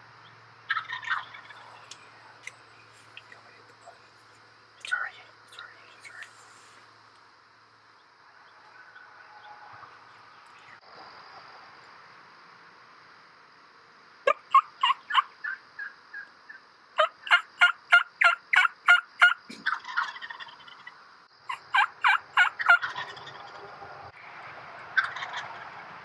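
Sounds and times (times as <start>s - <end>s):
turkey yelping: 0.7s - 1.7s, 14.3s - 16.3s, 17.0s - 20.9s, 21.5s - 23.6s, 25.0s - 25.7s.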